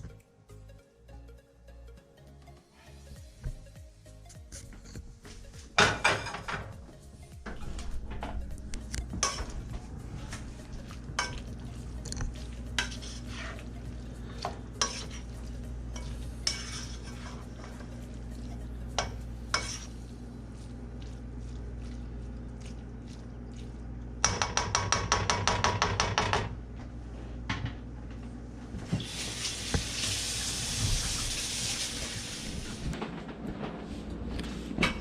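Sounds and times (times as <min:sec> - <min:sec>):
steady low hum: 0:03.1 - 0:25.3
utensil stirring and scraping pot: 0:09.2 - 0:23.6.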